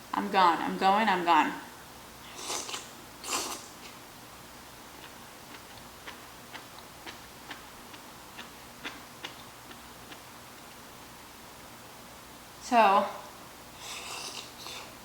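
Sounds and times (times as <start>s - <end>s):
person chewing food: 2.3s - 4.0s, 4.9s - 10.9s, 13.8s - 15.0s.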